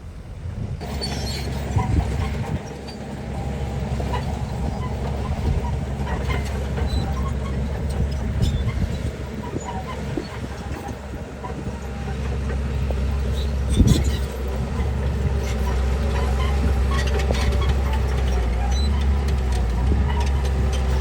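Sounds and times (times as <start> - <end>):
diesel engine rumbling: 0.0 - 21.0.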